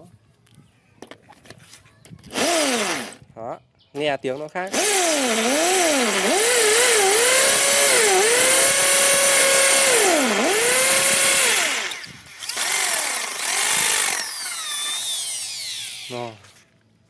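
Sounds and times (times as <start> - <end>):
hammer drill drilling into concrete: 2.3 - 3.2, 4.7 - 16.4.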